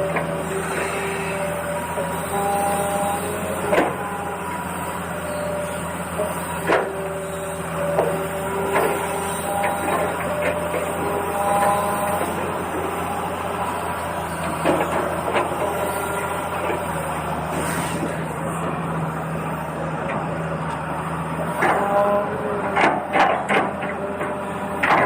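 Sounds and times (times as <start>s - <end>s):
electric gear motors whining: 0.0s - 25.0s.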